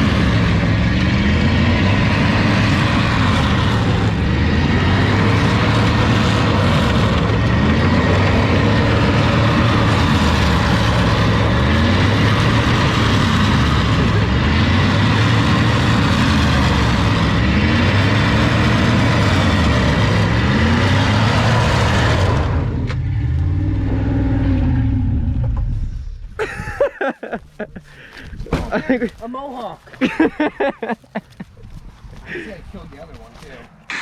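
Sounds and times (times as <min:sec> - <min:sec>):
truck engine revving: 0:00.0 - 0:26.3.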